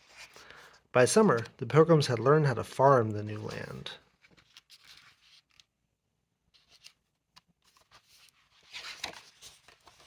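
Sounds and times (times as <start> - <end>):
paper rustling: 3.2 - 5.7, 6.5 - 10.0.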